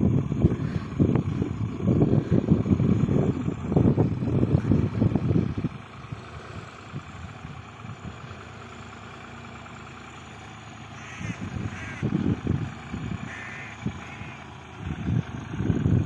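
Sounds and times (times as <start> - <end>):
low rumbles: 0.0 - 16.0
tractor engine running: 0.0 - 16.0
crows cawing: 10.9 - 12.1, 13.2 - 14.5.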